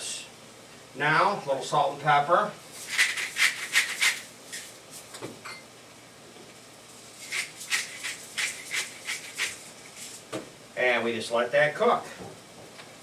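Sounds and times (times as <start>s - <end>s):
shaker rattling: 2.7s - 5.1s, 7.0s - 10.3s.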